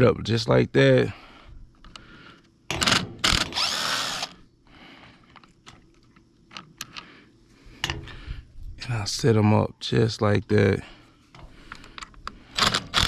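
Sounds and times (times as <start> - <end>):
cordless driver whirring: 2.8 - 4.4, 12.6 - 13.0
light clicks of small parts: 5.2 - 7.1, 11.3 - 12.5.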